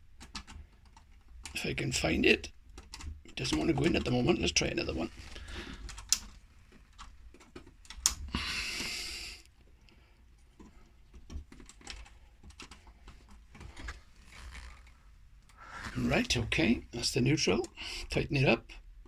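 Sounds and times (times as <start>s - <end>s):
plastic clicks and light scrapes: 2.7s - 8.3s
short rustling hiss: 13.9s - 16.7s.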